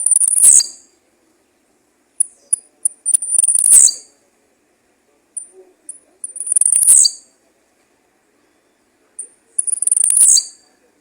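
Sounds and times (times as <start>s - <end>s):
bird singing buzzy high notes: 0.0s - 0.8s, 6.4s - 7.3s, 9.6s - 10.6s.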